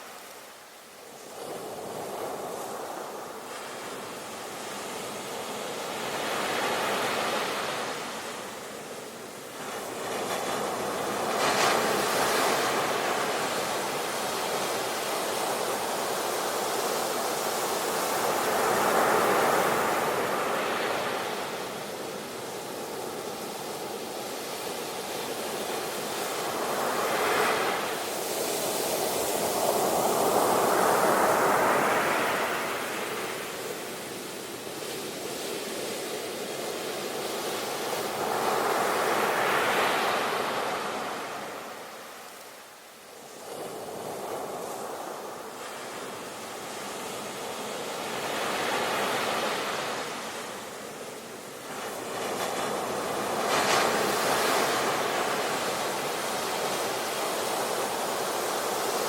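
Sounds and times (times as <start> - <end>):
ocean waves breaking on shore: 0.0 - 59.0.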